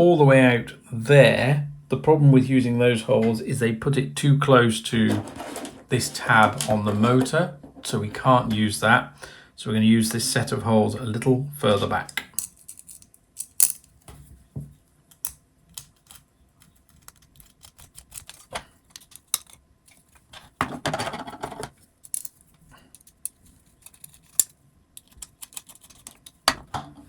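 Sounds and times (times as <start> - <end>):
parts clattering: 4.9 - 8.7, 11.8 - 27.0
screws clicking and tapping: 15.1 - 19.6, 22.9 - 26.7.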